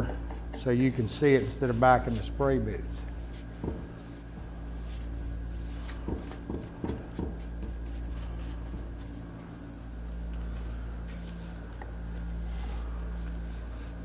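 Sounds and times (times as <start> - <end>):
steady low hum: 0.0 - 14.0
light knocks and taps: 3.6 - 3.9, 6.0 - 7.8.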